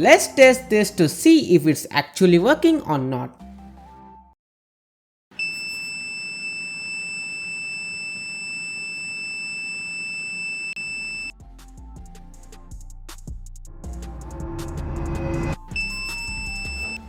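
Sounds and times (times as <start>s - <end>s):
high-pitched buzzer tone: 5.4s - 11.3s, 15.8s - 17.0s.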